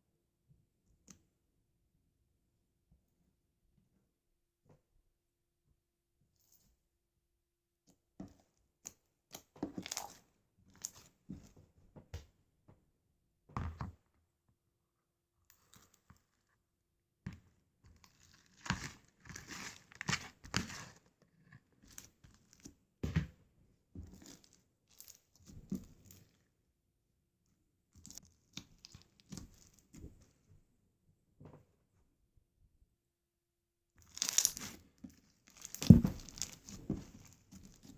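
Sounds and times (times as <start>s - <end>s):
slime squished by hand: 9.3s - 10.2s, 34.0s - 34.8s, 35.4s - 37.9s.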